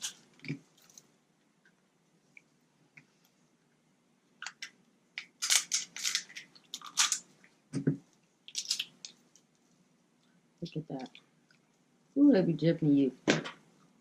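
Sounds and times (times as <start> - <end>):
crab shell cracking and snapping: 4.4 - 7.3, 8.5 - 9.5.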